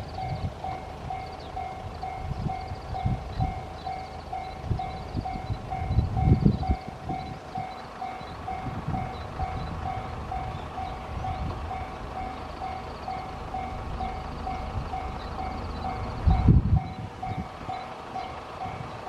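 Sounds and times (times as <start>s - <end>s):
low rumbling thumps: 8.4s - 17.8s.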